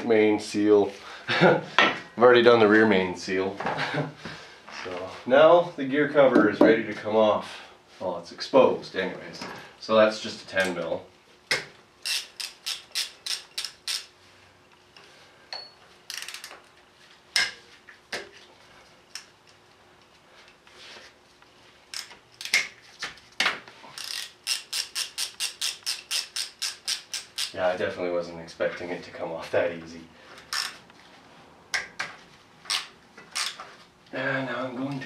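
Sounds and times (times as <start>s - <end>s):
ratchet wrench clicking: 12.0s - 14.1s, 24.0s - 27.6s.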